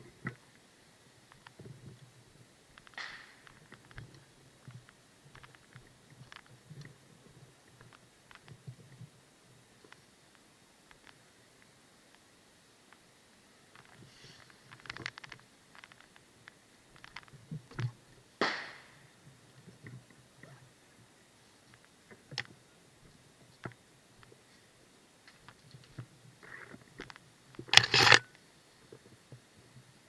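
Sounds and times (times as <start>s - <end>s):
sharp crack: 2.8s - 4.0s, 14.8s - 19.0s.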